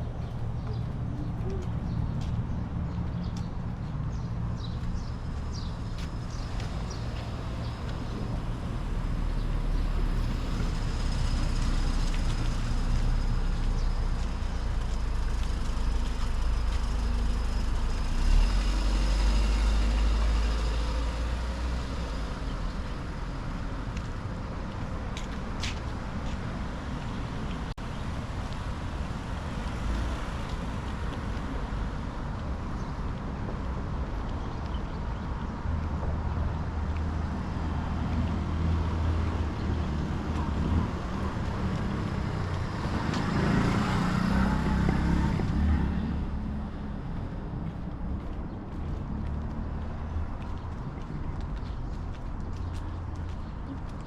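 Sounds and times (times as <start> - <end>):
motor vehicle passing: 0.0 - 23.9, 35.7 - 54.0.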